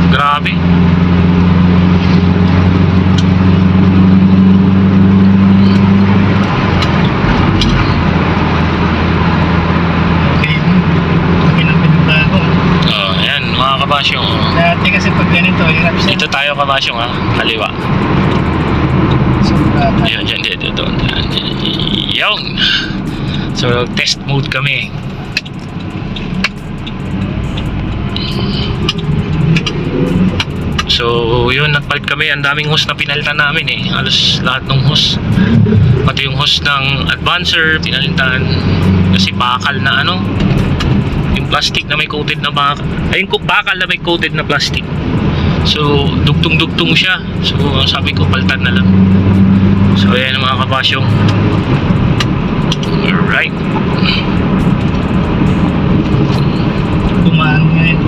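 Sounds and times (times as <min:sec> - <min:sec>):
car engine drone: 0:00.0 - 0:58.0
road noise: 0:00.0 - 0:58.0
sharp clicks: 0:24.4 - 0:31.0, 0:51.2 - 0:57.2.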